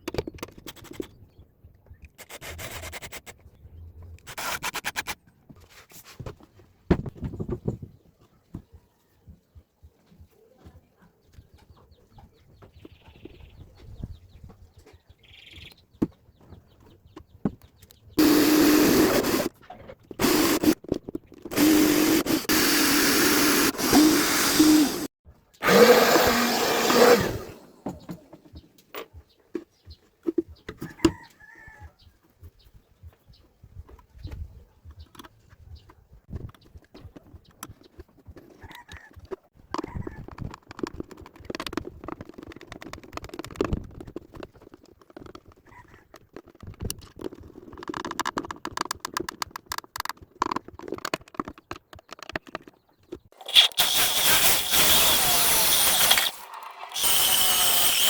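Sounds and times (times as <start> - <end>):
power tool motor running: 18.2 - 19.5, 20.2 - 20.8, 21.5 - 27.8, 53.4 - 58.0
small clicks and handling knocks: 36.4 - 53.3.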